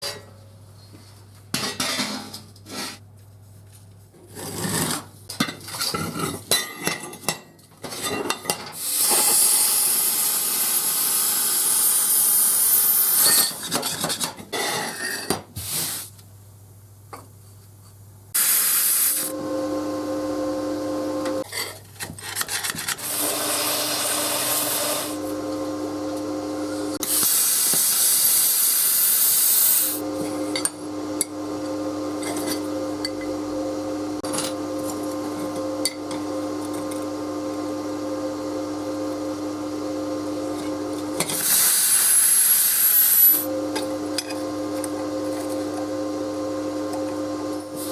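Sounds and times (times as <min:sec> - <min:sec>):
machine humming: 0:18.4 - 0:21.4, 0:23.0 - 0:27.1, 0:30.0 - 0:42.2, 0:43.1 - 0:47.9.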